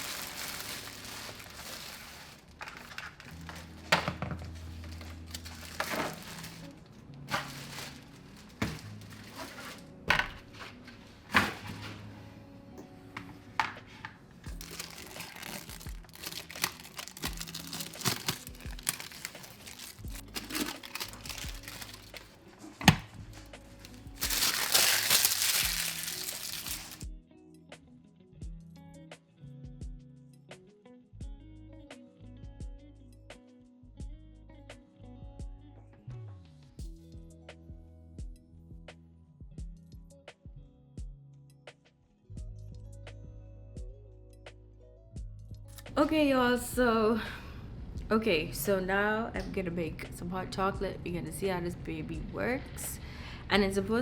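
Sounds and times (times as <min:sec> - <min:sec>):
plastic crinkling: 0:00.0 - 0:10.6, 0:14.5 - 0:27.0
plastic tearing: 0:00.0 - 0:11.9, 0:14.5 - 0:27.0
background music: 0:00.0 - 0:54.0.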